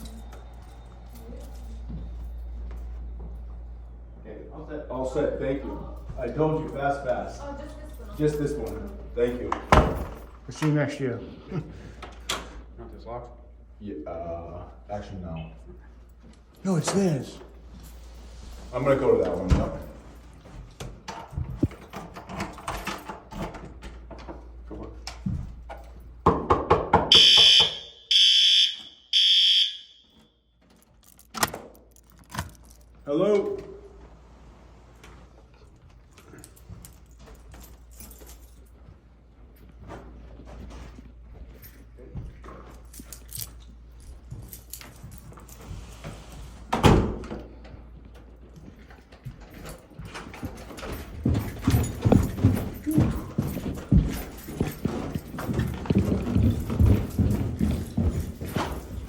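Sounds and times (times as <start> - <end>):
keys jangling: 0.0 - 3.2, 6.6 - 10.7, 19.6 - 26.2, 30.1 - 33.1, 35.5 - 46.7, 48.0 - 59.0
smoke alarm beeps: 27.1 - 30.3.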